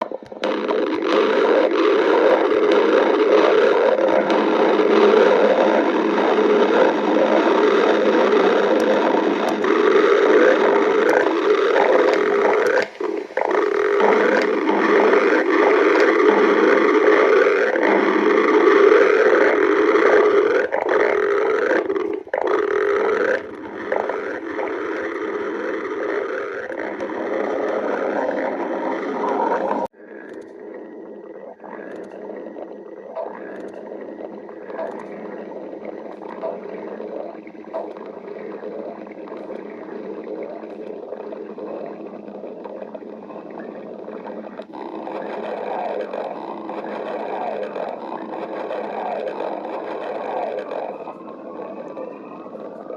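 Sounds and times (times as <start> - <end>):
stomach growling: 0.0 - 52.9.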